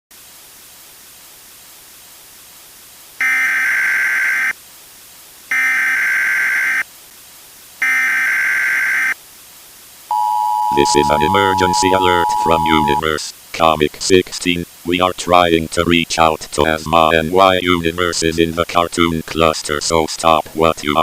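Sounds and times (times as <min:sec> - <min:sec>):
hiss: 0:00.1 - 0:03.2
digital data bursts: 0:10.1 - 0:13.2.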